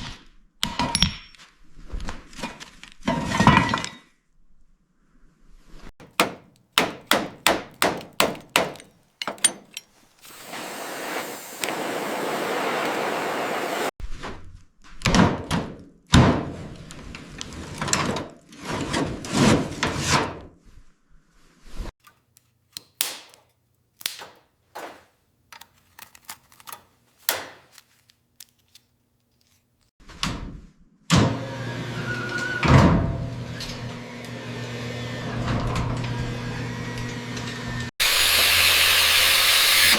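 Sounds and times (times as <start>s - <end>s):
sharp knocks: 6.0s - 9.8s, 24.1s - 25.1s
steady hissing: 9.6s - 13.9s.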